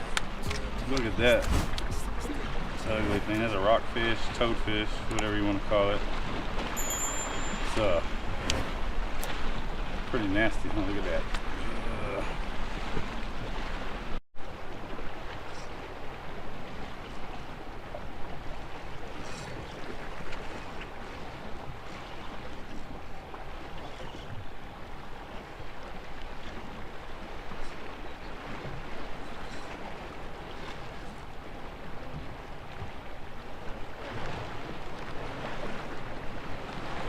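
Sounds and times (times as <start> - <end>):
waves washing against rocks: 0.0 - 14.2.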